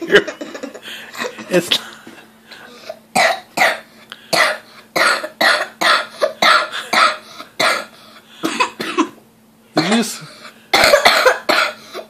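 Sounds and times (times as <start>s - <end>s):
boy coughing: 2.9s - 9.2s, 9.8s - 12.0s.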